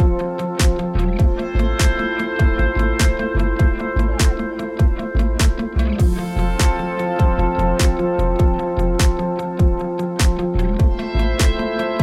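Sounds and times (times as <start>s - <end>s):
deep kick drums: 0.0s - 11.7s
sustained chords: 0.0s - 12.0s.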